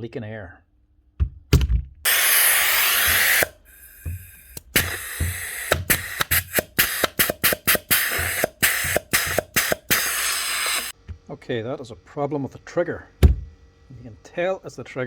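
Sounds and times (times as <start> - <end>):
air hissing from nail gun: 2.1 - 11.0
trigger clicks with short hisses: 2.1 - 11.0
nail gun click and thump: 3.0 - 10.9.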